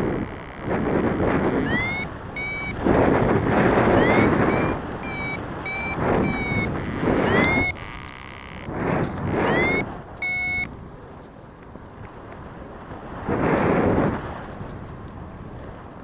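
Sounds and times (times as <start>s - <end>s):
variometer beeping: 0.0s - 10.7s
wind buffeting microphone: 0.0s - 16.0s.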